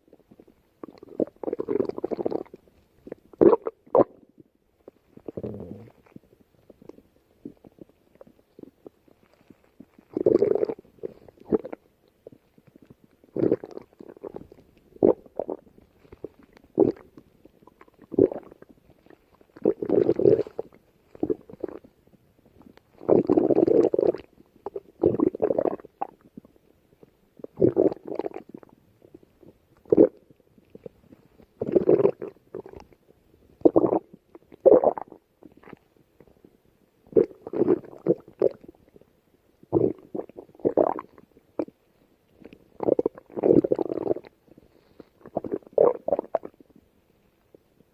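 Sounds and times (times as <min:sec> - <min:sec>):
stomach growling: 0:00.0 - 0:47.9.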